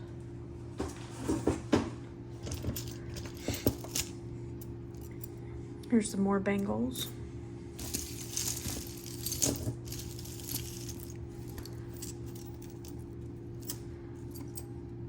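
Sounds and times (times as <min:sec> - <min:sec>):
metal jewelry clinking: 0:02.4 - 0:05.3, 0:07.8 - 0:14.7
low hum: 0:06.9 - 0:14.8.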